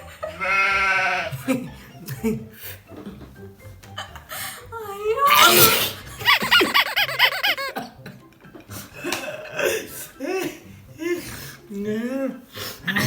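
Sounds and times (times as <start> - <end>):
rapid laughter: 0.0 - 4.7, 5.4 - 13.0
short vocal burst: 5.3 - 6.0
person sneezing: 5.3 - 6.1.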